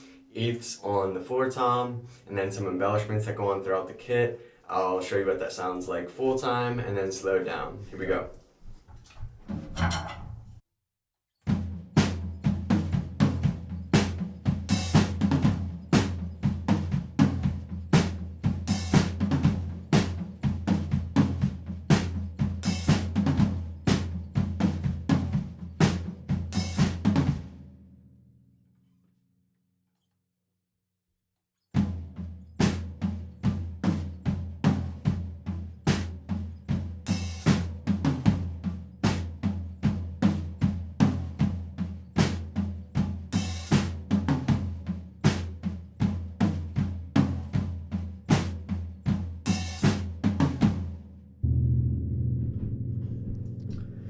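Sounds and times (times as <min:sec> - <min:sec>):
acoustic drum kit groove: 0:11.5 - 0:27.7, 0:31.8 - 0:51.1.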